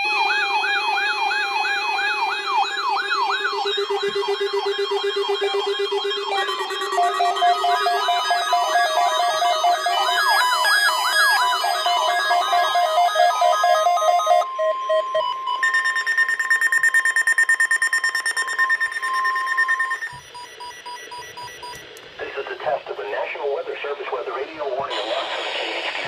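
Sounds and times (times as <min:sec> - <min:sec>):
warbling electronic alert alarms: 0:00.0 - 0:21.9
steady tone with pulsed beeping: 0:02.5 - 0:21.8.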